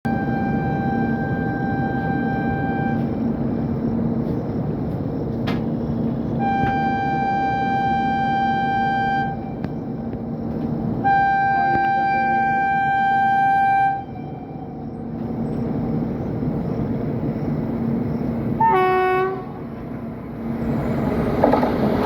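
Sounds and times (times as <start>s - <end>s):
locomotive horn blasts: 0.1s - 3.3s, 6.4s - 9.7s, 11.0s - 14.7s, 18.6s - 19.7s
running train noise: 0.1s - 22.0s.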